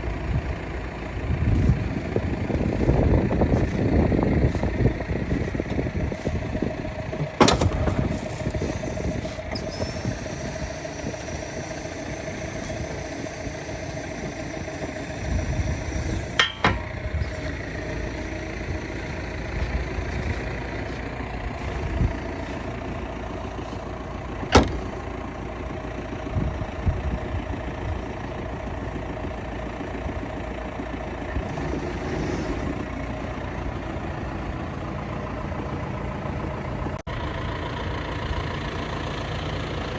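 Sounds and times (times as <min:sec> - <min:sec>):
tractor diesel engine running: 0:00.0 - 0:39.9
sharp knocks: 0:07.2 - 0:08.4.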